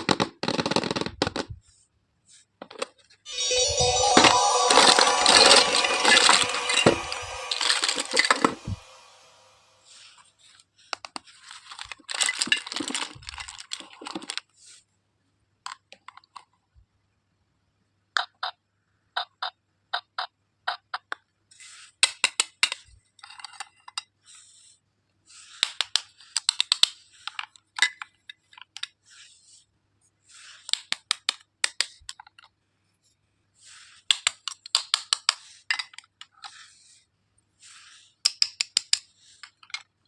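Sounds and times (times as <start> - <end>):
packaging rustling: 11.5 - 14.4
plastic toy pieces clicking: 25.6 - 28.9, 30.6 - 32.5, 38.2 - 39.9.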